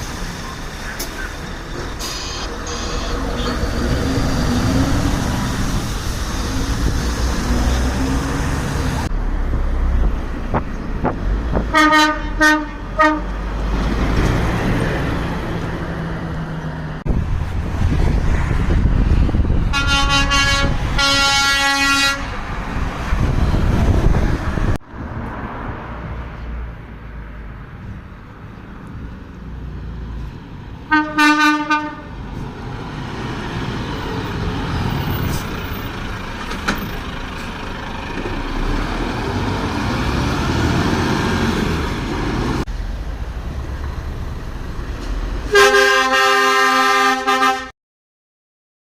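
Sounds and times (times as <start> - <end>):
truck engines and traffic rumble: 0.0 - 47.7
truck horn blasts: 2.1 - 3.8, 11.7 - 13.4, 19.7 - 22.4, 30.9 - 32.1, 45.5 - 47.7.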